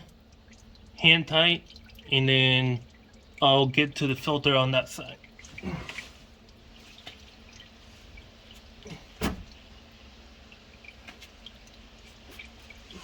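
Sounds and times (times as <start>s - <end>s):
small drip ticks: 0.0s - 4.3s, 5.0s - 13.0s
oil trickling into a pan: 0.0s - 13.0s
dull thump: 9.2s - 9.6s.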